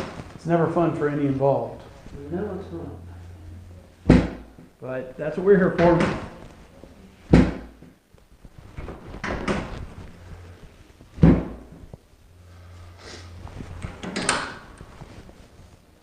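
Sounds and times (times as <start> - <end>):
shuffling and table creaking: 5.8 - 16.0.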